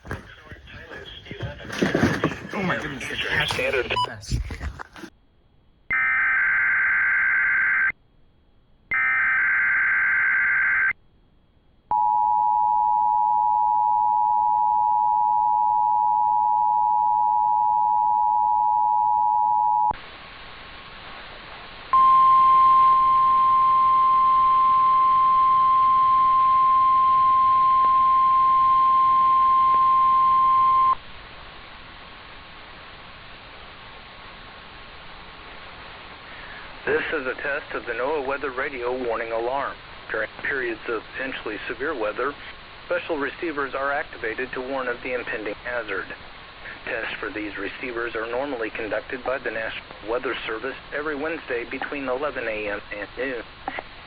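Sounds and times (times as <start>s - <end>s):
radio hiss: 0.0s - 5.1s, 20.0s - 29.0s, 30.5s - 54.0s
steady warning alarm tone: 22.0s - 31.0s.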